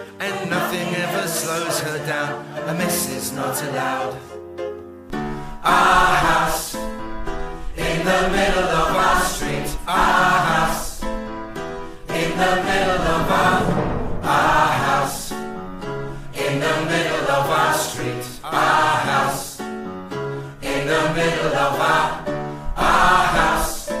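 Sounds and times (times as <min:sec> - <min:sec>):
pop song with sung vocals: 0:00.0 - 0:04.3.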